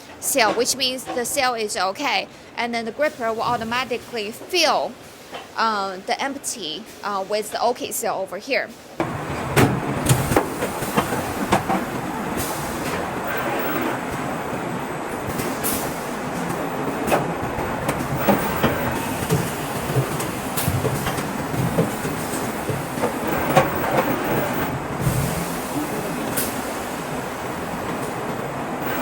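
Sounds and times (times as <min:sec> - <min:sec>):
assembly line machinery clatter: 0:15.2 - 0:27.2
sharp machine clacks: 0:17.9 - 0:24.8.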